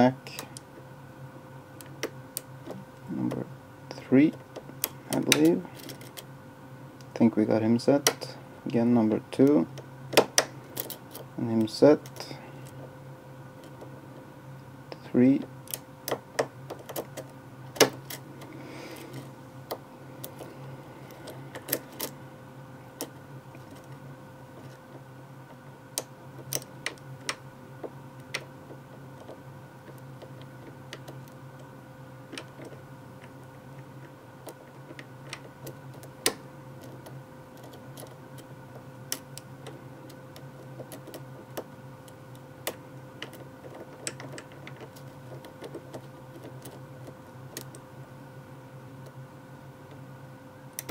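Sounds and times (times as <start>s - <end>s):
steady electrical hum: 0.0s - 50.9s
lock pick clicking pins: 25.9s - 27.4s, 39.1s - 47.8s.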